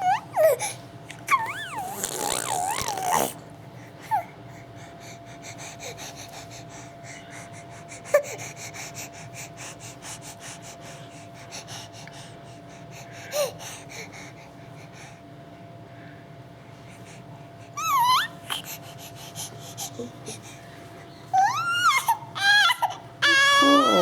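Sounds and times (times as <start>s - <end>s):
baby wheezy breathing: 0.4s - 3.4s, 4.0s - 15.2s, 16.8s - 20.7s
baby high squeaks: 1.3s - 3.4s, 21.4s - 24.0s
baby vocal sound: 1.3s - 3.4s, 21.4s - 24.0s.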